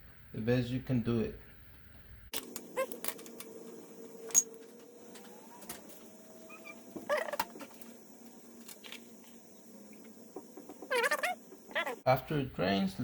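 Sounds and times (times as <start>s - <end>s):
faint hum: 0.0s - 13.0s
squawk-like call: 6.4s - 7.6s, 10.8s - 12.1s.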